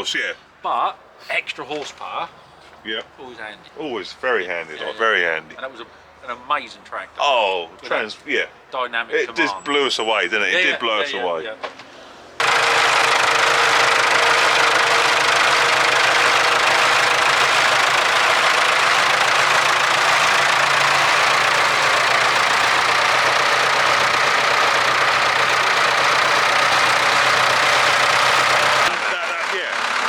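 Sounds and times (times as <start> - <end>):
tractor diesel engine running: 12.4 - 30.0.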